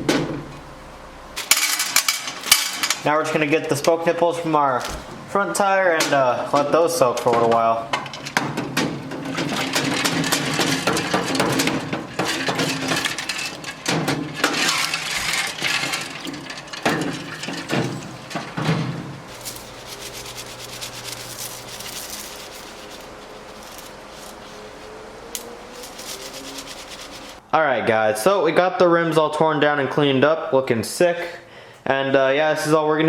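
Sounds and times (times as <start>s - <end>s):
metal parts clinking and rattling: 1.4s - 3.1s, 8.0s - 27.4s.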